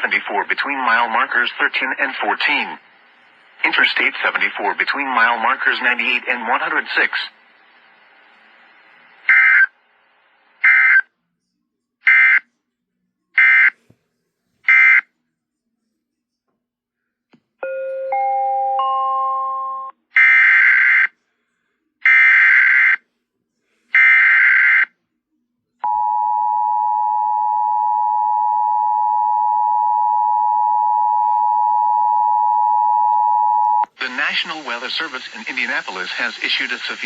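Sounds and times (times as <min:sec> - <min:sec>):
data-header screech: 0:09.3 - 0:09.8.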